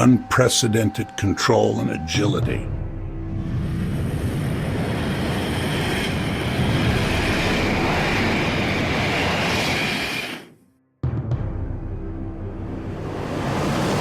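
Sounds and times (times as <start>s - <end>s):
jet engine roar: 3.4s - 10.6s, 13.0s - 14.0s.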